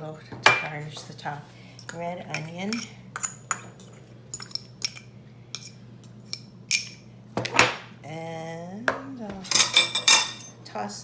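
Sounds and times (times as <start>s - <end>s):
utensil clinking against bowl: 1.8s - 7.0s, 9.5s - 10.6s.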